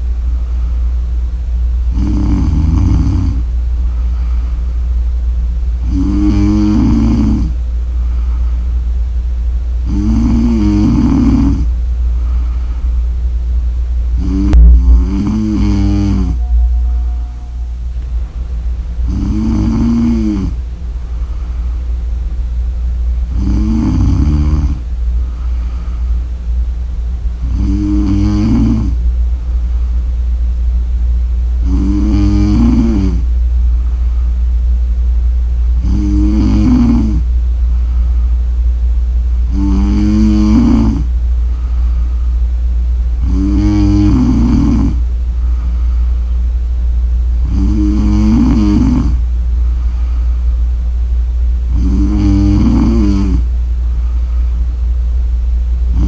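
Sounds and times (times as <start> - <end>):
steady low hum: 0.0 - 56.0
woman snoring: 1.9 - 3.5, 5.8 - 7.6, 9.9 - 11.7, 14.2 - 16.4, 19.1 - 20.6, 23.3 - 24.8, 27.4 - 29.0, 31.6 - 33.2, 35.8 - 37.3, 39.5 - 41.1, 43.2 - 45.0, 47.4 - 49.2, 51.7 - 53.5.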